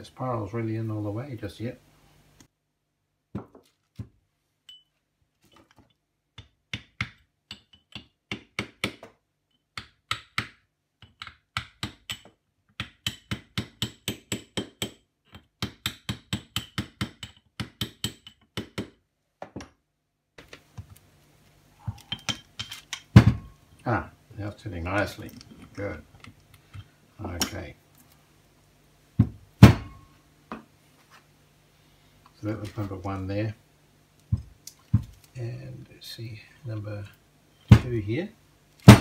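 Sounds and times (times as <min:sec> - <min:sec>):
metal-on-metal taps and clicks: 0:04.7 - 0:04.9, 0:06.4 - 0:18.9, 0:22.0 - 0:23.4.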